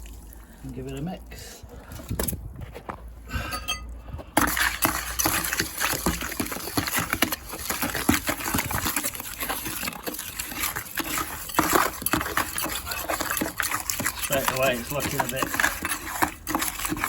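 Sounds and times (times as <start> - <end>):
mortar being mixed by hand: 3.6 - 17.0.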